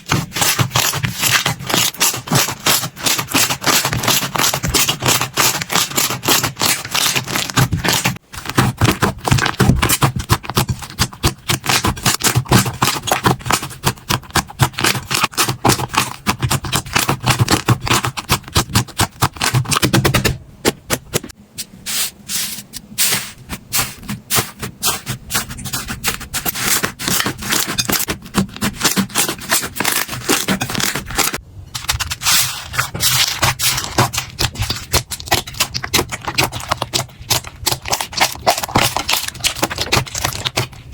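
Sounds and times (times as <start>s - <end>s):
slime crackling and popping: 33.1s - 40.8s.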